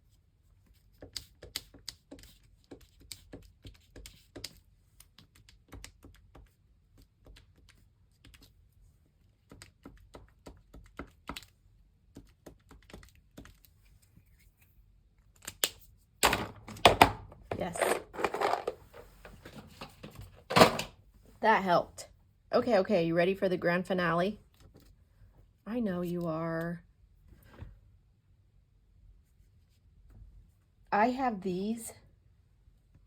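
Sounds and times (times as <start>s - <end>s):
light tapping on paper: 0.7s - 8.5s.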